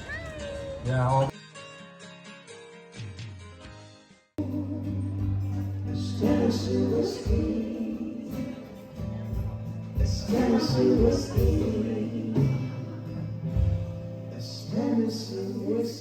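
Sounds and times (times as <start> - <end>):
background music with low notes: 3.0 - 16.0.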